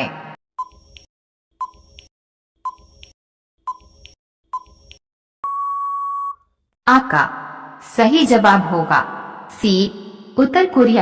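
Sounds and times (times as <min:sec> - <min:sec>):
long steady beep: 0:05.4 - 0:06.4.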